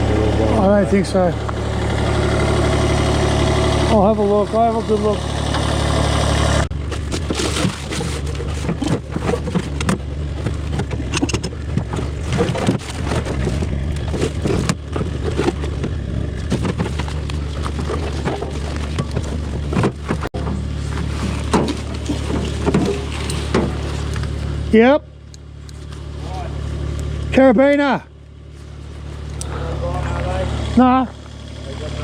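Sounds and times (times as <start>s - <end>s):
engine idling: 0.0s - 32.0s
knocks clanks and scrapes: 6.6s - 24.6s.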